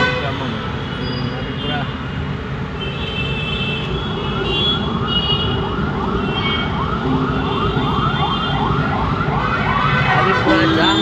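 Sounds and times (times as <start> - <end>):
traffic rumble: 0.0 - 11.0
car horn beeps: 2.8 - 5.6, 10.0 - 11.0
siren yelping: 4.8 - 11.0.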